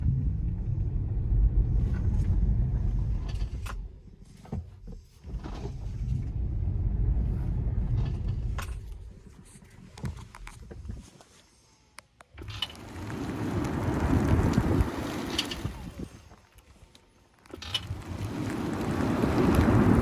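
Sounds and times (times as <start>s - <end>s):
car road rumble: 0.0s - 11.0s, 12.4s - 16.6s, 17.5s - 20.0s.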